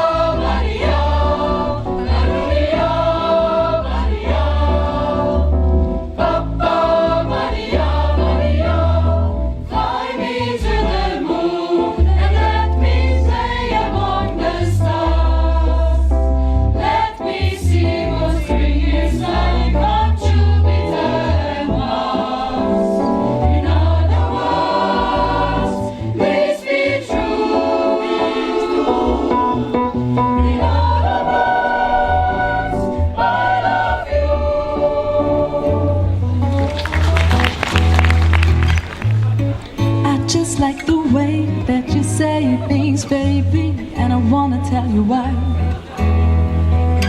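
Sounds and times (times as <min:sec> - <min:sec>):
deep bass line: 0:00.0 - 0:11.2, 0:12.0 - 0:22.1, 0:28.9 - 0:31.2, 0:32.2 - 0:47.0
layered singing voices: 0:00.0 - 0:36.6.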